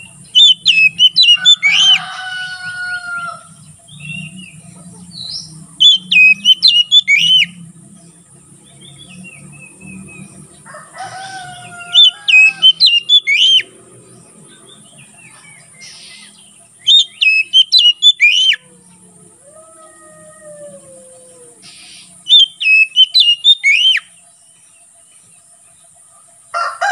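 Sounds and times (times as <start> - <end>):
magpie-robin singing: 0.0 - 2.1, 3.0 - 10.6, 11.6 - 19.0, 21.6 - 25.3.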